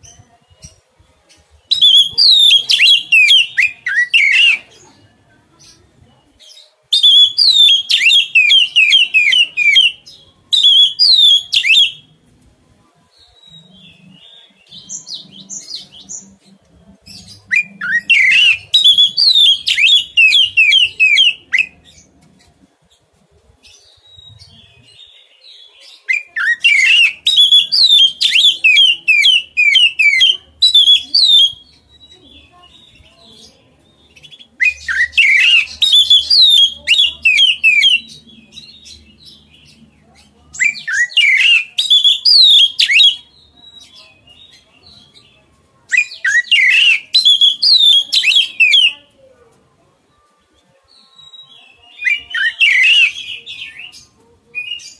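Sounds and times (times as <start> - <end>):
bird singing rapid notes: 17.3 - 21.8.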